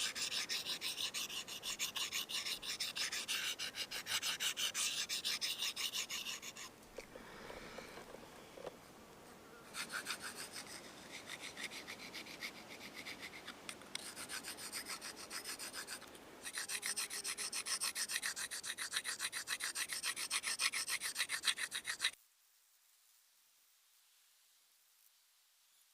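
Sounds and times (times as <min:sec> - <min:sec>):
knife rasping on sharpening stone: 0:00.0 - 0:06.7, 0:09.7 - 0:22.2.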